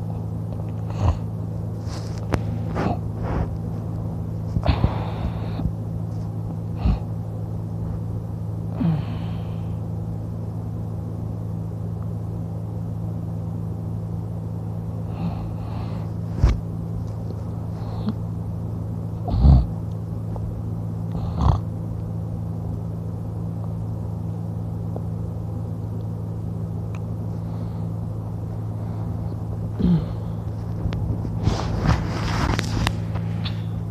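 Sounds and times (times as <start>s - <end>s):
steady low hum: 0.0s - 33.9s
man snoring: 6.7s - 7.1s, 8.7s - 9.8s, 19.2s - 19.7s, 21.1s - 21.7s, 29.8s - 30.4s.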